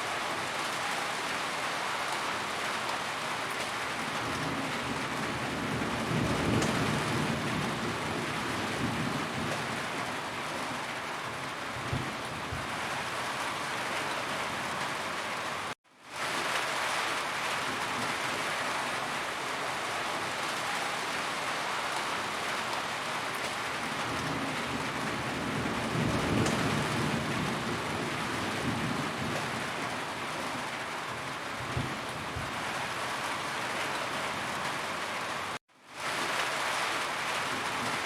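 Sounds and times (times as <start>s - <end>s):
heavy rain drumming on a roof: 0.0s - 38.0s
low rumble of thunder: 4.1s - 10.5s, 11.7s - 13.0s, 23.9s - 30.6s, 31.6s - 32.9s.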